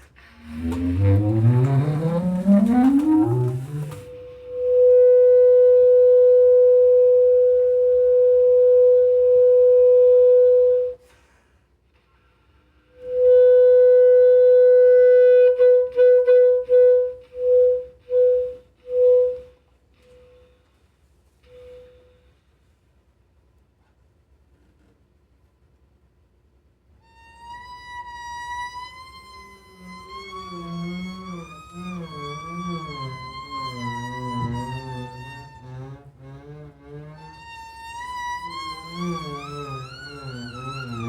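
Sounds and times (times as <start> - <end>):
experimental contemporary music: 0.2 - 4.1.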